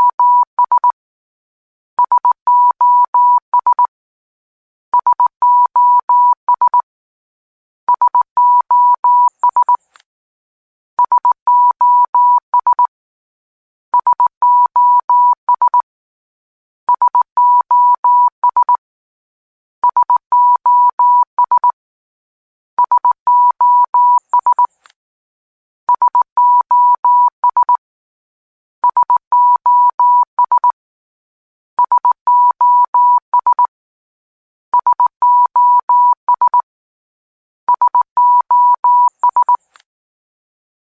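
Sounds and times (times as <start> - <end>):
morse code beeps: 7.9 - 9.8, 11.0 - 12.9, 14.0 - 15.8, 16.9 - 18.8, 19.8 - 21.8, 22.8 - 24.7, 25.9 - 27.8, 28.8 - 30.8, 31.8 - 33.7, 34.8 - 36.6, 37.7 - 39.6.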